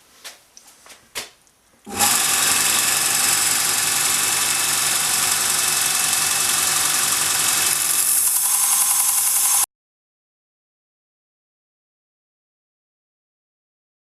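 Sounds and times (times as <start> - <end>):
belt sharpener motor whirring: 1.9 - 9.7.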